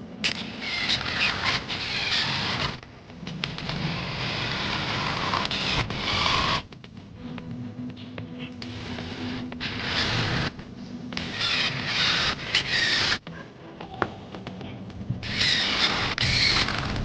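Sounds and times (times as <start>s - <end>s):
wood being sanded by hand: 3.4s - 6.7s, 8.6s - 10.6s, 11.2s - 13.2s.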